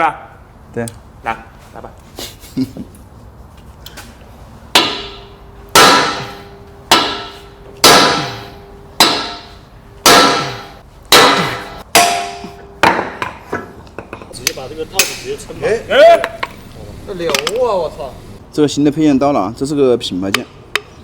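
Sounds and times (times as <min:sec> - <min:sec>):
hammer striking metal: 0:04.7 - 0:15.5.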